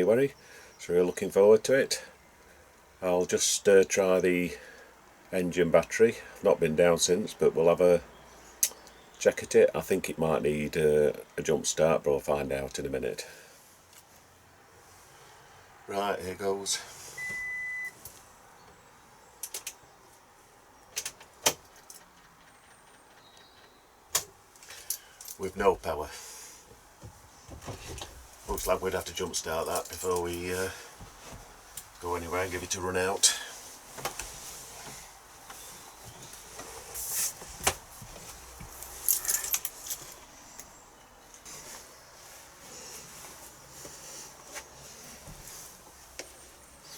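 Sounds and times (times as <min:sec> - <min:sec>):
keys jangling: 0:38.8 - 0:40.2.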